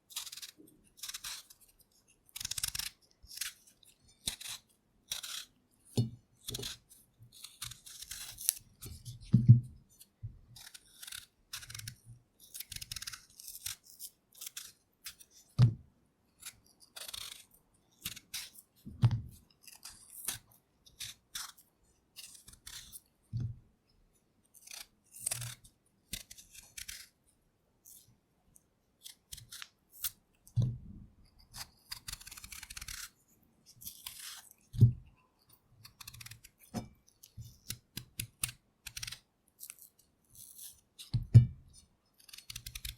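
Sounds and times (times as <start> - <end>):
knife scraping potato skin: 0.1 - 9.3, 10.6 - 15.6, 16.4 - 18.7, 19.4 - 23.1, 24.5 - 27.2, 29.0 - 30.2, 31.3 - 34.9, 35.8 - 41.3, 42.2 - 42.9.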